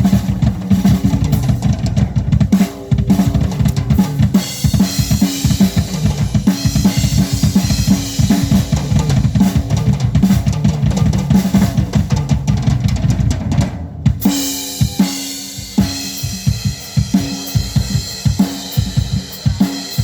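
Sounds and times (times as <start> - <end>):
drum kit playing: 0.0 - 20.0.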